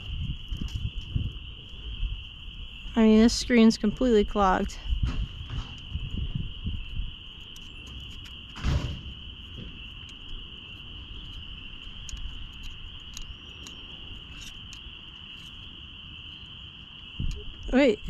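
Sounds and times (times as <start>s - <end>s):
insects chirring: 0.0s - 18.0s.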